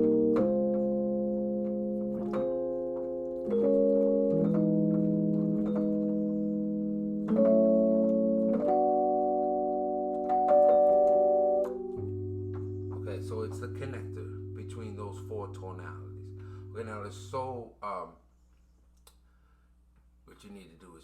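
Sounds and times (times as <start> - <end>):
piano playing slow chords: 0.0 - 17.4.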